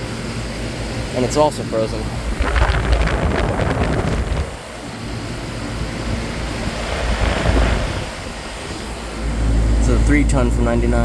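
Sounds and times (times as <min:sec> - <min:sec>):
air conditioner fan rushing: 0:00.0 - 0:11.0
wind buffeting microphone: 0:02.0 - 0:09.8.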